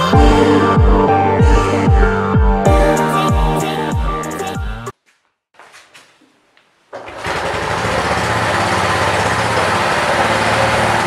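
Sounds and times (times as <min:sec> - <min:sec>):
small motorcycle engine running: 0:07.0 - 0:11.0.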